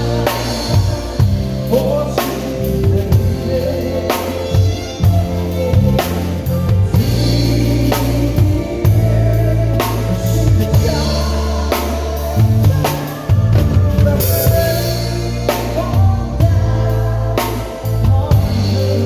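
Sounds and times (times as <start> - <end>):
drum kit playing: 0.0 - 19.0
recorded song with singing: 0.0 - 19.0.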